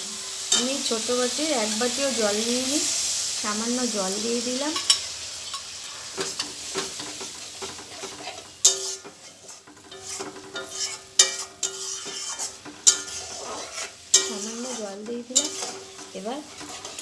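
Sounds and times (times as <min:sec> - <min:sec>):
masala sizzling in a pan: 0:00.0 - 0:17.0
spoon stirring and scraping: 0:04.7 - 0:17.0
spoon clinking against pan: 0:07.6 - 0:09.2, 0:09.8 - 0:13.2, 0:14.1 - 0:17.0.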